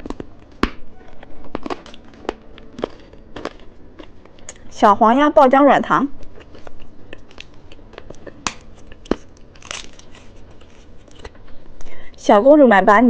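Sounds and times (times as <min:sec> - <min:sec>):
plastic wrapper crinkling and tearing: 0:00.0 - 0:04.7, 0:06.2 - 0:11.5.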